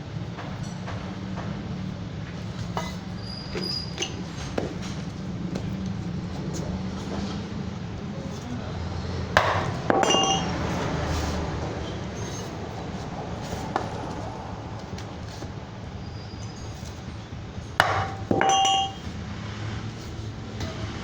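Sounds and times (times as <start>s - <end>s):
metal striking metal: 9.4s - 10.8s, 17.8s - 19.2s.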